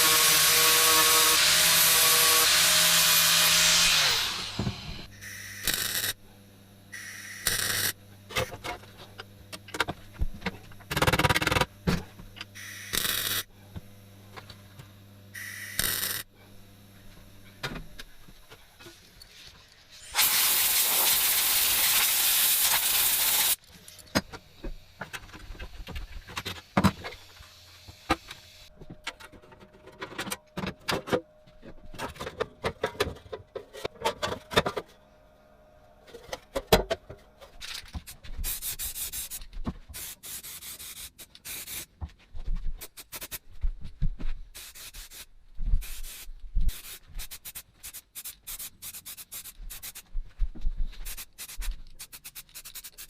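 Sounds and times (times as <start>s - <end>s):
loud steady hiss: 20.0s - 23.6s
short hissing strokes: 40.0s - 41.9s, 44.6s - 50.0s.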